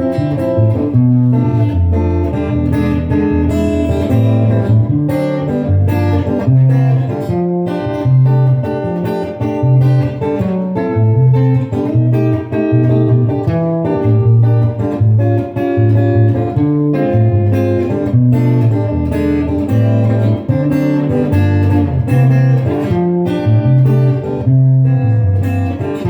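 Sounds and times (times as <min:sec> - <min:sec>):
acoustic guitar music: 0:00.0 - 0:26.0.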